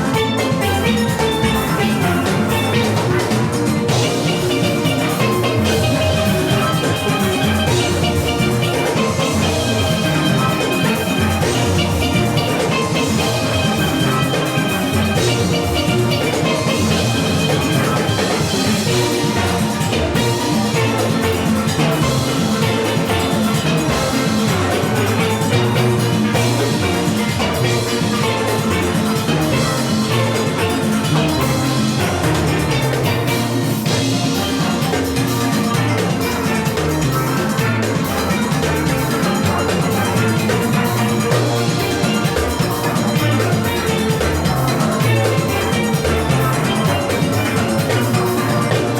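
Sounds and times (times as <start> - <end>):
drum kit and percussion beat: 0.0 - 48.9.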